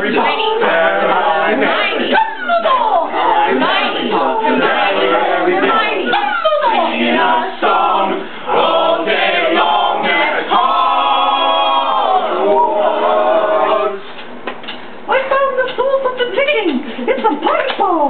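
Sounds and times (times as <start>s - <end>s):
voices singing a chant: 0.0s - 14.1s.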